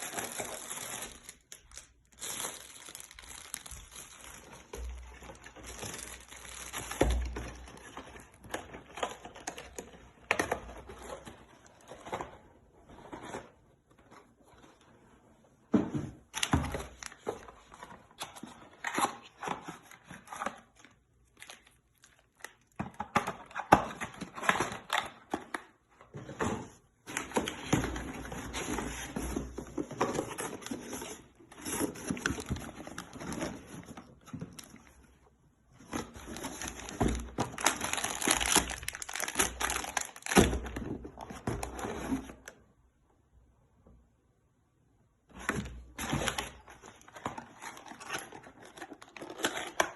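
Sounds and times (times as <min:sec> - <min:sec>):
plastic packaging crinkling: 0:00.0 - 0:09.8, 0:36.0 - 0:40.7.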